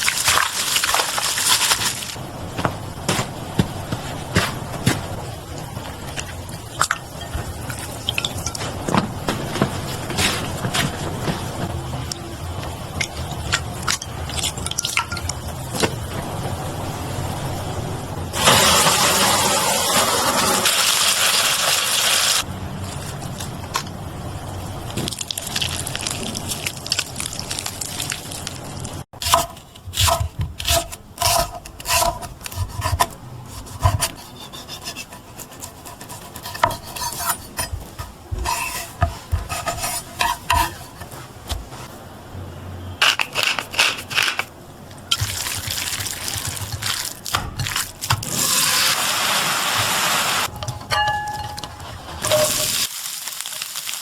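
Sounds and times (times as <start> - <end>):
utensils knocking on cookware: 34.9 - 41.8, 50.5 - 52.8.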